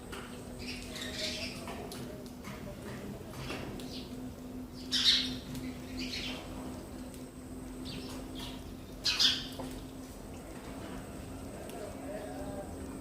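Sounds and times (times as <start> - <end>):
sparrows chirping: 0.4 - 1.7, 3.8 - 7.0, 7.8 - 10.0.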